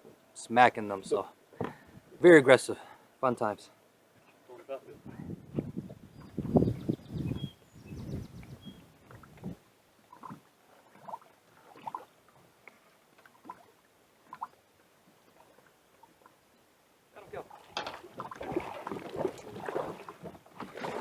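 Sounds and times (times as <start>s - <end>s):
water splashing around boat: 8.4s - 16.4s, 17.2s - 21.0s.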